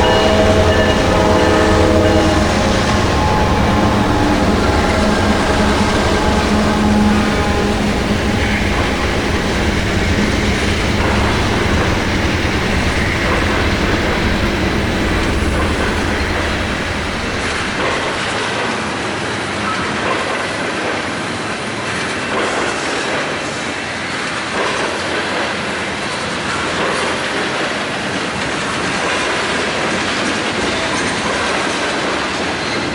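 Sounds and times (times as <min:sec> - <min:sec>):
wheels clacking on rails: 0:00.0 - 0:18.3
deep train rumble: 0:00.0 - 0:18.4
train rolling along track: 0:00.0 - 0:18.4.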